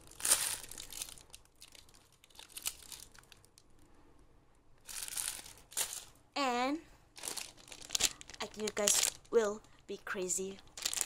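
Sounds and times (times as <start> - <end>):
packaging crinkling: 0.0 - 3.7, 4.8 - 6.2, 7.2 - 9.4, 10.6 - 11.0.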